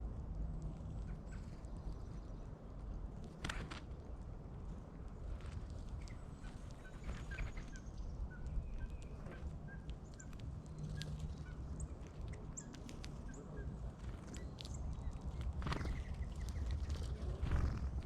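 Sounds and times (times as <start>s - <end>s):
birds chirping: 6.0s - 18.0s.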